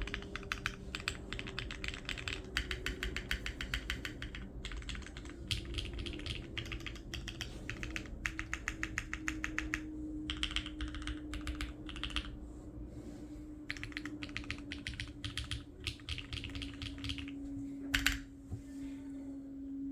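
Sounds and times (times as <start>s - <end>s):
mechanical keyboard typing: 0.0s - 12.3s, 13.7s - 18.2s.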